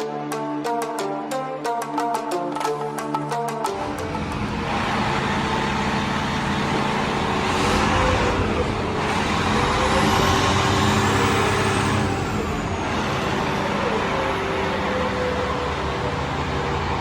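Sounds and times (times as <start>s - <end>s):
diesel engine running: 3.7s - 17.0s.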